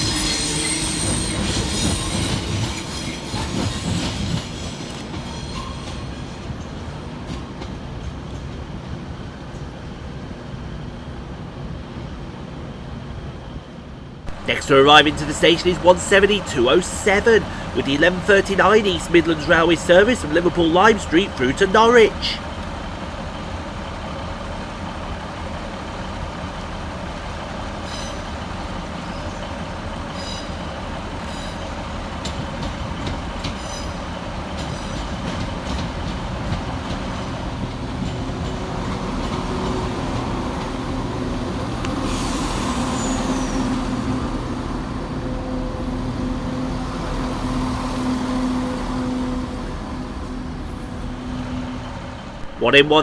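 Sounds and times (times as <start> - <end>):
train engine rumbling: 14.3 - 22.6.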